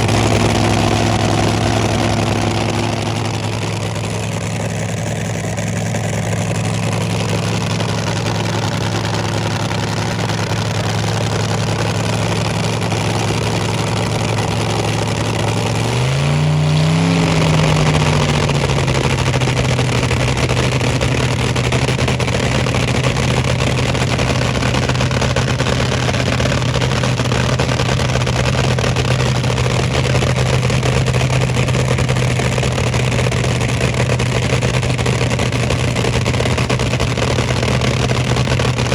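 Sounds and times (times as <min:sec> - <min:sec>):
loud engine running and revving: 0:00.0 - 0:38.9.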